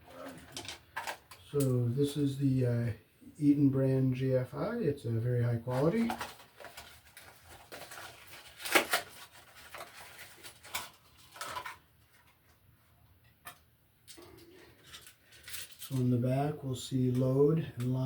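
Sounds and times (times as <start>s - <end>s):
handling rustles: 5.7s - 12.6s.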